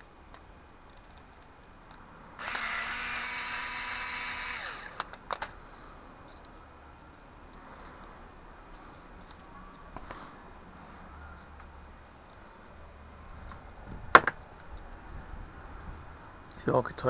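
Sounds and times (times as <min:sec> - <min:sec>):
sharp clicks: 0:00.3 - 0:05.6
power tool whining: 0:02.4 - 0:05.6.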